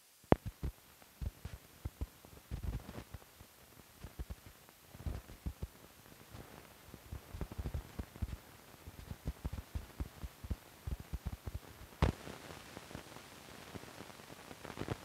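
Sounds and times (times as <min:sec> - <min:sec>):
faint steady hiss: 0:00.0 - 0:15.0
sharp pop: 0:12.0 - 0:12.2.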